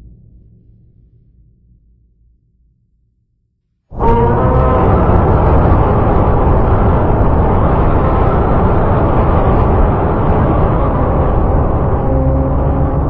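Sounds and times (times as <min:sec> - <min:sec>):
rumbling monster roar: 0:03.9 - 0:13.0.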